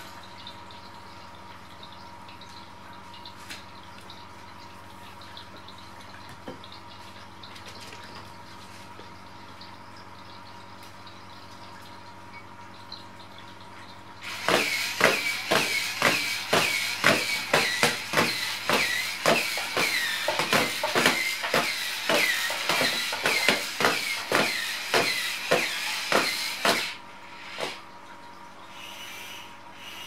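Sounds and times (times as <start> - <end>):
toy robot clicking and whining: 14.2 - 27.0.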